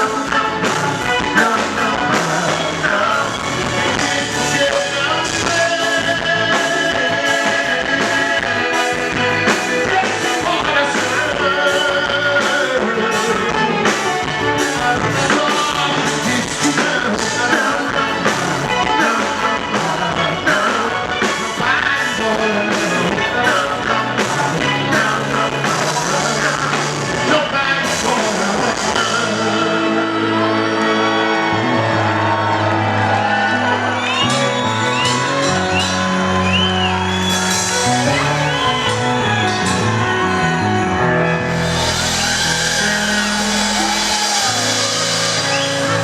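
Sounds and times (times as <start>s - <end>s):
live band music: 0.0s - 46.0s
steady drum beat: 34.2s - 40.0s, 41.5s - 46.0s.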